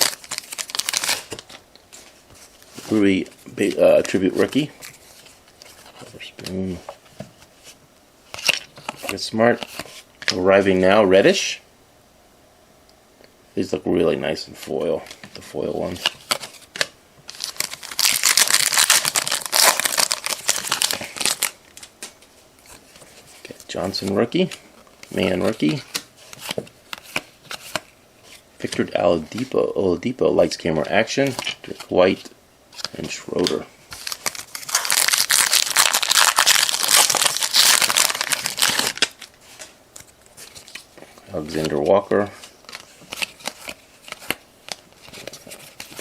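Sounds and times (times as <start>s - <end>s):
plastic wrapper crackling: 0.0s - 1.5s, 16.0s - 22.1s, 32.8s - 41.7s.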